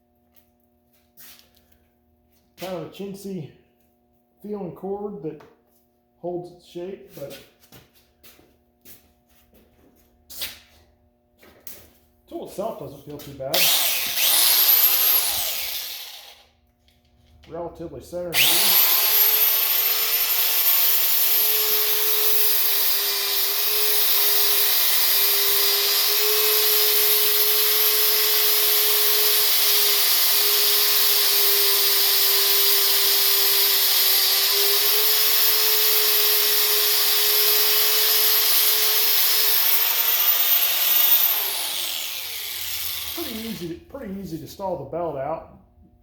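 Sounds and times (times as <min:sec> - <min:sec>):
belt sander motor whine: 0:13.6 - 0:16.5, 0:18.4 - 0:26.8, 0:27.4 - 0:43.7.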